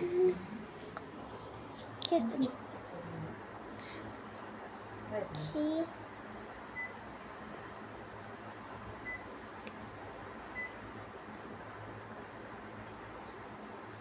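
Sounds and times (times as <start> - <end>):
air conditioner running hum: 0.0 - 14.0
air conditioner beeps: 6.7 - 7.0, 9.0 - 9.4, 10.5 - 10.9.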